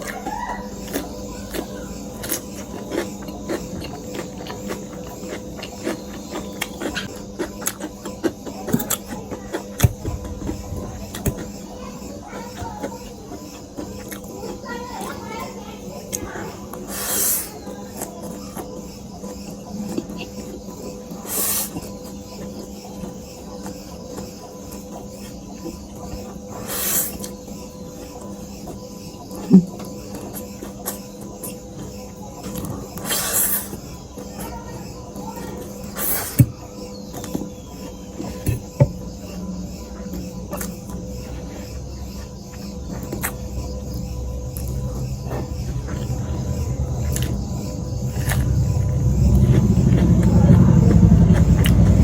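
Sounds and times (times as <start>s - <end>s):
wet chewing clicks and smacks: 0.0s - 11.6s
faint steady hum: 0.0s - 52.0s
slurping noodles: 16.1s - 18.0s.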